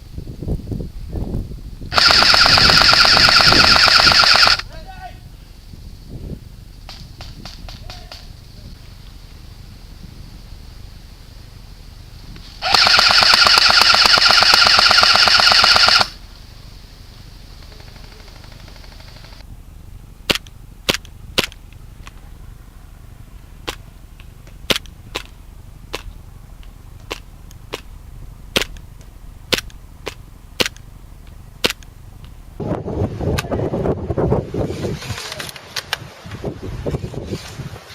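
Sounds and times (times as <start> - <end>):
airsoft gun full-auto burst: 1.9 - 4.7, 12.6 - 16.2, 17.6 - 19.4.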